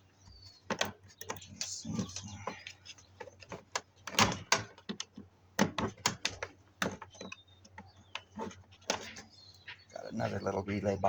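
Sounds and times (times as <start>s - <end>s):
plastic and metal parts clicking: 0.7s - 9.2s.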